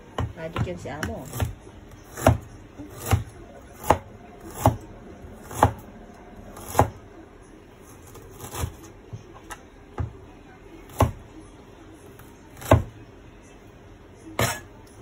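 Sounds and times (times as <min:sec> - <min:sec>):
knife chopping on board: 0:00.1 - 0:05.8, 0:06.6 - 0:07.0, 0:08.4 - 0:08.8, 0:10.9 - 0:11.2, 0:12.6 - 0:12.9, 0:14.4 - 0:14.6.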